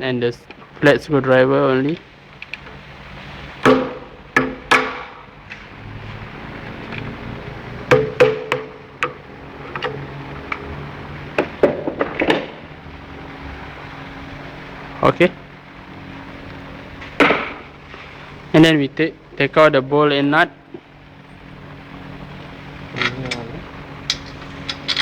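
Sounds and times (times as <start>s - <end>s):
mallet striking a screwdriver: 7.9s - 9.2s.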